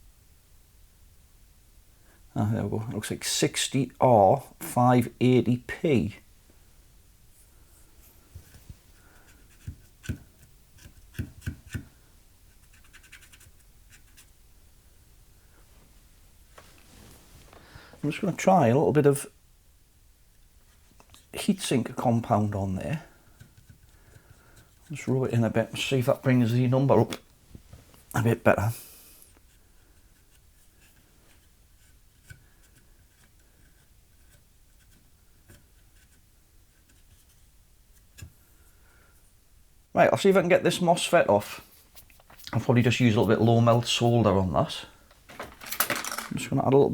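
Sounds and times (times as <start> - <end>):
faint scratchy rubbing: 15.6 - 18.5, 40.8 - 45.0
light scratching: 41.0 - 46.5.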